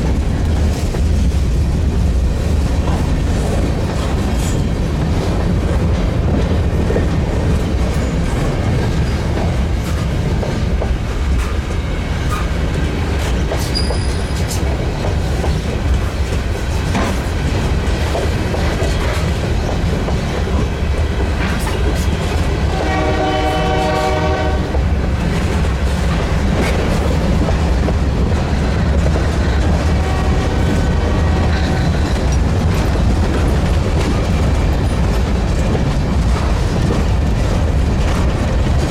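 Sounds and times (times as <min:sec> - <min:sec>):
diesel locomotive rumble: 0:00.0 - 0:38.9
train cars rolling: 0:00.0 - 0:38.9
locomotive horn blast: 0:22.6 - 0:24.8, 0:29.8 - 0:31.8.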